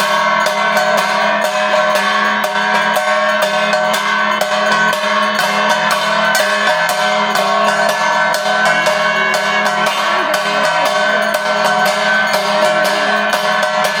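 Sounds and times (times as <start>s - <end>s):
clanging percussion beat: 0.0s - 14.0s
sustained drone: 7.0s - 14.0s.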